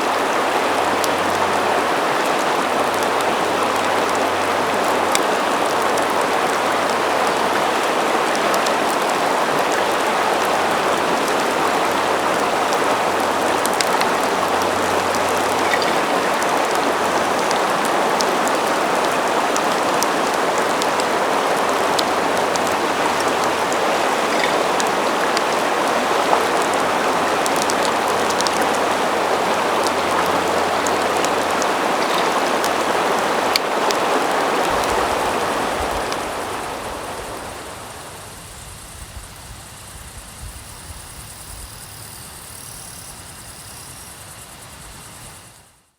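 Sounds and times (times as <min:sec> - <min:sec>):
river water rushing: 0:00.0 - 0:38.2
faint ticks: 0:12.2 - 0:34.1.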